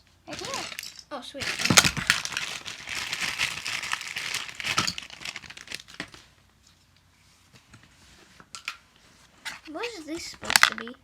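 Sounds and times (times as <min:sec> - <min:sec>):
packaging crinkling and rustling: 0:00.3 - 0:06.4.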